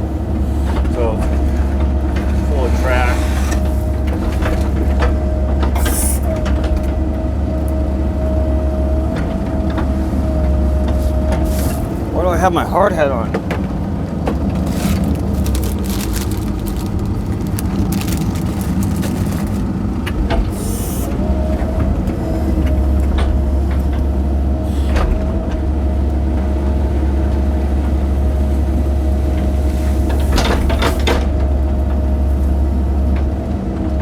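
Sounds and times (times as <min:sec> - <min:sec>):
diesel engine under load: 0:00.0 - 0:34.0
bucket knocking and scraping: 0:14.3 - 0:19.8.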